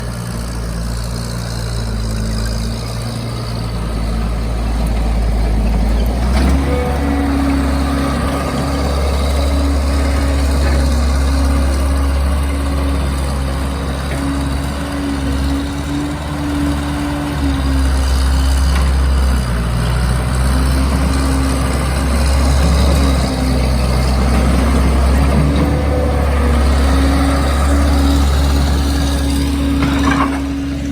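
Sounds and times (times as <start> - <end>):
diesel engine drone: 0.0 - 30.9.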